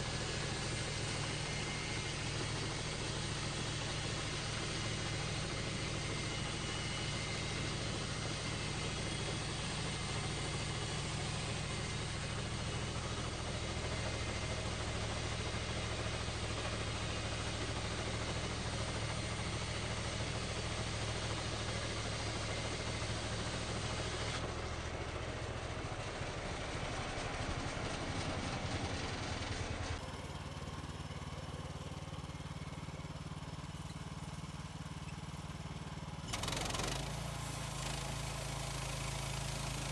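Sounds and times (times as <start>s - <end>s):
gas engine running: 0.0s - 14.3s, 30.0s - 39.9s.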